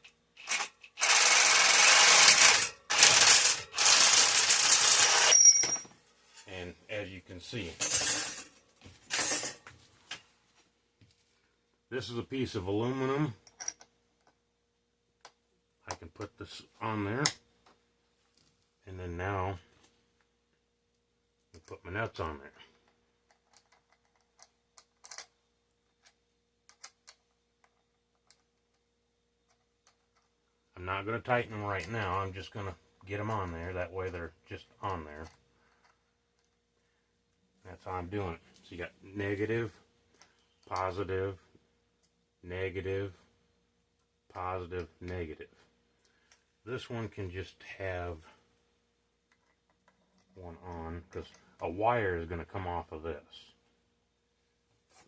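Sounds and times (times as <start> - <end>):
power tool cutting metal: 0.4 - 5.4.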